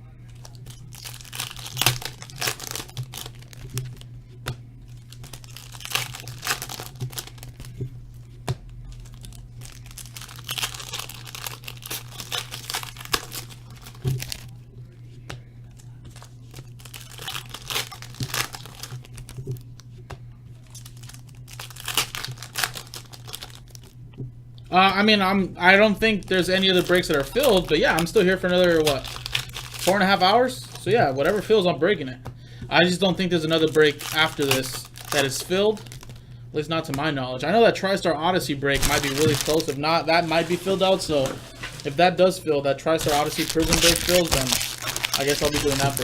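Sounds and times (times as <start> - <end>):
steady low hum: 0.0 - 46.0
card pack wrappers tearing and crinkling: 0.2 - 4.1, 4.9 - 7.9, 8.9 - 14.6, 15.8 - 19.9, 20.6 - 24.0, 26.2 - 31.6, 32.9 - 36.2, 38.6 - 46.0.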